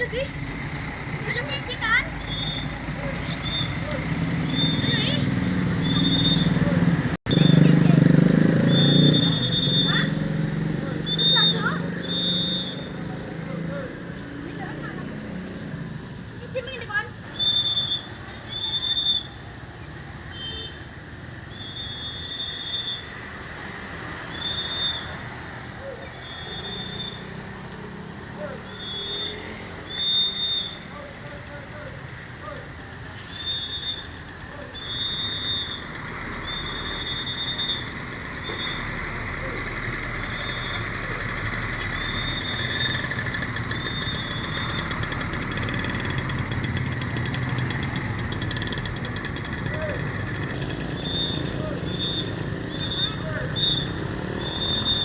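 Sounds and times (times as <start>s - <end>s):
road traffic: 0.0s - 55.0s
diesel engine idling: 30.0s - 55.0s
shrill horn toots: 34.8s - 47.0s, 49.4s - 55.0s.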